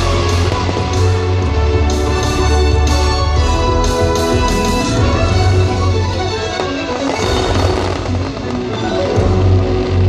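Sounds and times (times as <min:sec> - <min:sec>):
heavy bass: 0:00.0 - 0:06.3
music over loudspeakers: 0:00.0 - 0:10.0.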